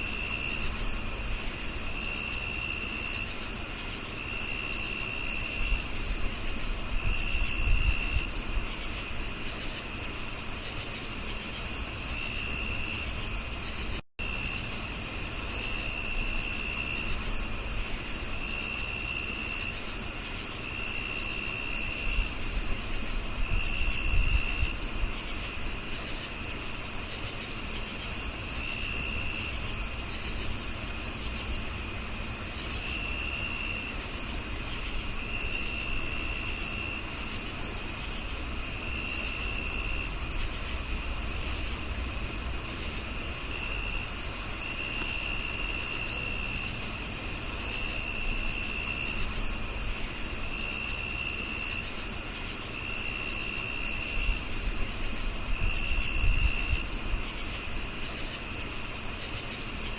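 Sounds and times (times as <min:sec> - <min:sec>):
crickets chirping: 0:00.0 - 0:59.9.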